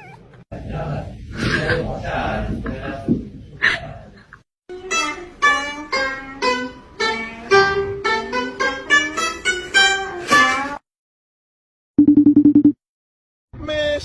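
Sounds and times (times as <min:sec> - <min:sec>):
plucked string music: 0:04.7 - 0:10.8.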